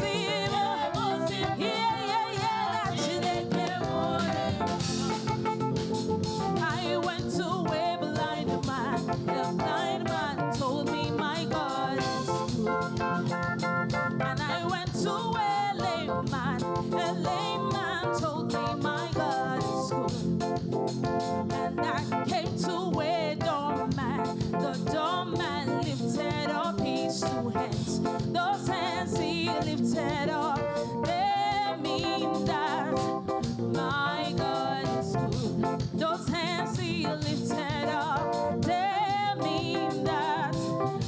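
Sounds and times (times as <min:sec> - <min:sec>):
people singing: 0:00.0 - 0:13.4, 0:14.2 - 0:41.0
band with driving beat: 0:00.0 - 0:41.0.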